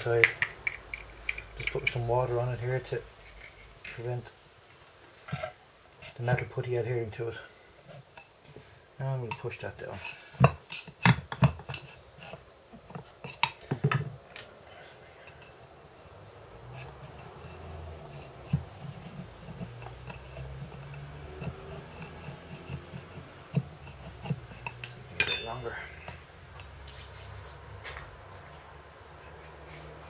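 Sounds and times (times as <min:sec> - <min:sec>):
plastic scraping inside metal tube: 0:16.6 - 0:25.1
sharp metal knocks and clinks: 0:24.7 - 0:25.9.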